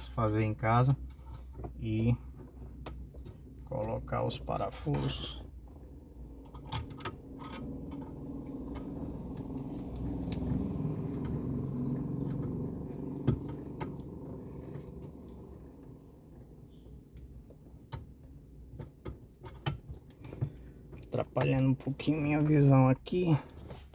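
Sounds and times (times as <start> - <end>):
low rumble: 5.4 - 18.3.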